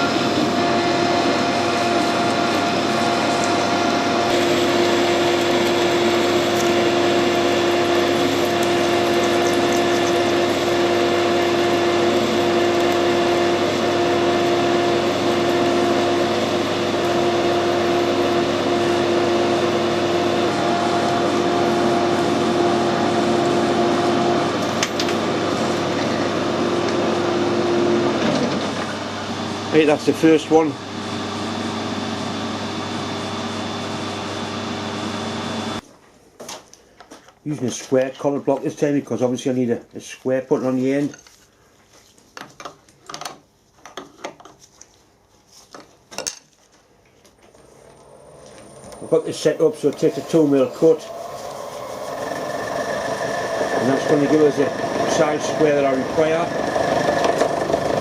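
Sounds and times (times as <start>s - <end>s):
metal lathe humming: 0.0s - 35.8s, 47.6s - 58.0s.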